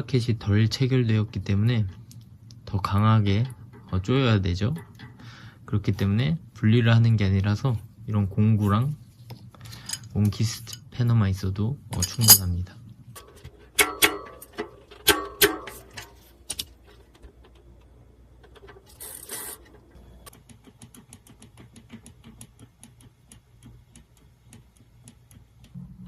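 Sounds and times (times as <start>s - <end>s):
steel tools clinking: 9.7s - 10.9s, 11.9s - 12.6s.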